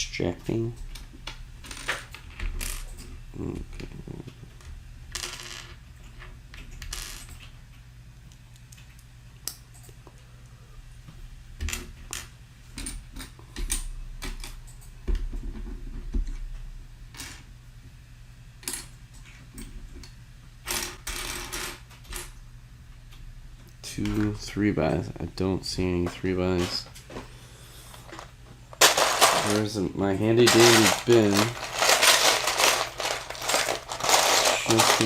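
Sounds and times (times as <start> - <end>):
plastic toy pieces clattering: 28.8 - 35.0.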